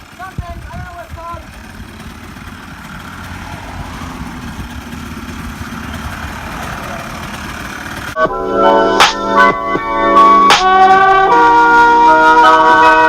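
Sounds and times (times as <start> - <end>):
atv engine running: 0.0 - 8.2
piano-like keyboard music: 8.2 - 13.0.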